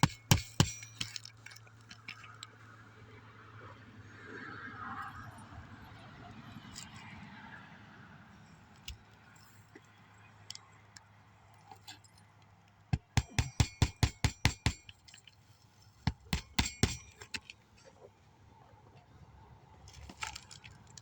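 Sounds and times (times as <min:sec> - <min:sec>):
hammer striking metal: 0:00.0 - 0:01.2, 0:13.0 - 0:14.9, 0:16.1 - 0:17.5.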